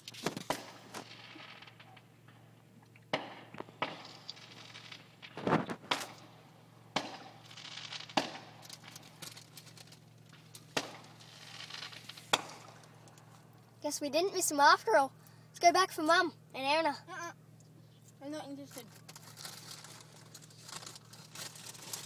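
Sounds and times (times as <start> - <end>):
fireworks bangs: 0.0 - 2.5, 3.1 - 9.6, 10.3 - 13.1.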